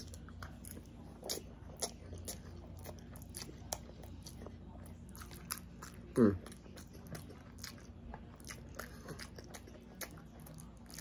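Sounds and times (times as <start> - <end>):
person chewing food: 0.0 - 11.0.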